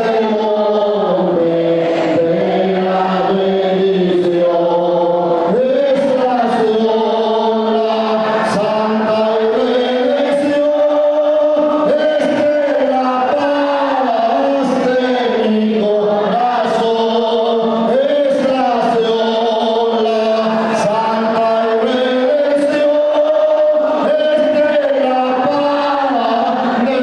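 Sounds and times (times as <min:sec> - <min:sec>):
group of voices singing: 0:00.0 - 0:27.0.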